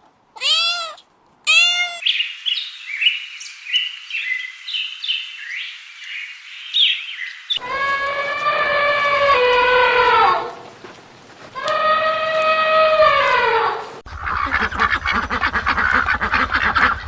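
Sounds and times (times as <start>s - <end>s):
small birds chirping: 1.6s - 7.7s
long loud animal call: 7.6s - 10.6s, 11.6s - 14.7s.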